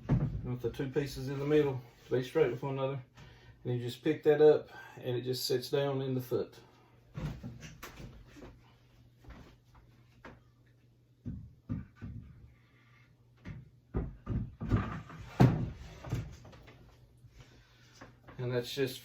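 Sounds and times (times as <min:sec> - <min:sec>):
wooden rack knocking and clunking: 0:00.0 - 0:00.6, 0:11.2 - 0:12.5, 0:13.4 - 0:16.7.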